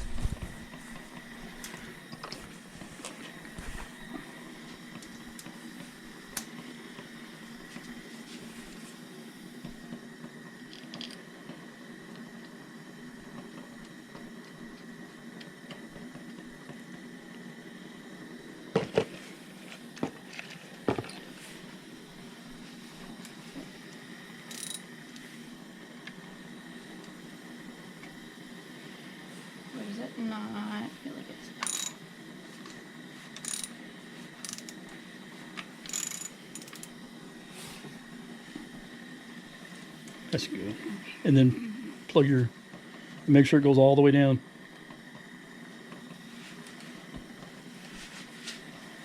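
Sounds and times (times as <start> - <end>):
tools clicking and knocking: 24.5 - 24.8, 31.6 - 32.0, 33.4 - 33.8, 34.4 - 34.8, 35.8 - 36.9.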